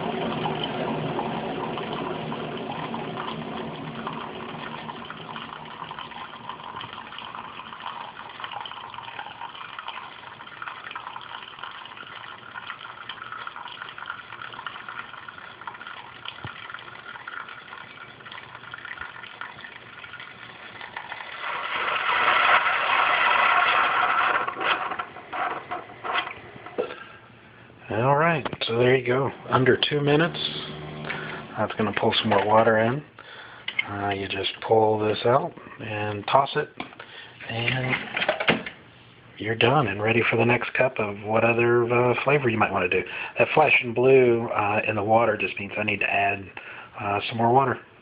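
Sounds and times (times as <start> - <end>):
coffee maker pump running: 0.0 - 27.1, 27.8 - 35.2
coffee pouring into a cup: 0.0 - 27.1, 27.9 - 36.8, 39.4 - 47.8.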